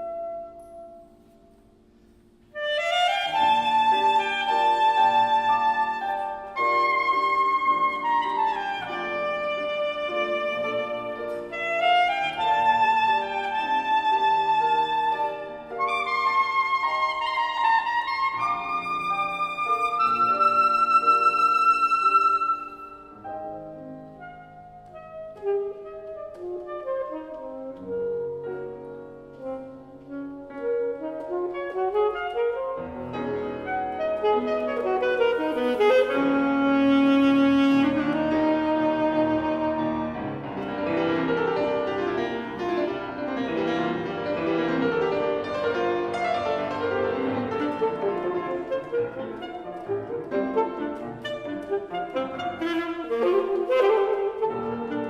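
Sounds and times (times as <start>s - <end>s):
alto saxophone melody: 0.0s - 55.0s
piano accompaniment: 0.0s - 55.0s.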